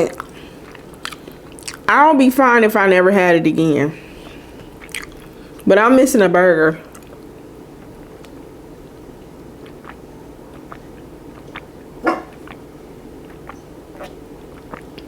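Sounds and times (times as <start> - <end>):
chewing with wet mouth clicks: 0.0 - 1.9, 4.0 - 5.7, 6.8 - 15.0
low room hum: 0.0 - 15.0.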